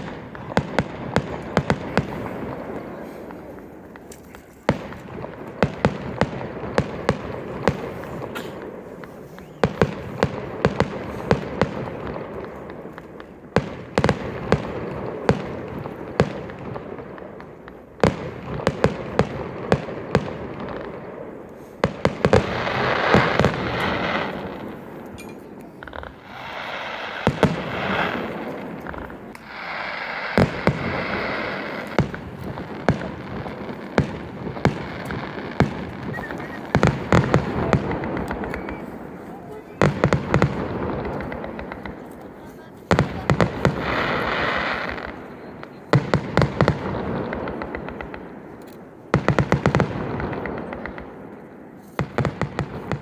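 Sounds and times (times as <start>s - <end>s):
fireworks crackling: 0.0s - 53.0s
loud fizzing hiss: 29.3s - 32.0s.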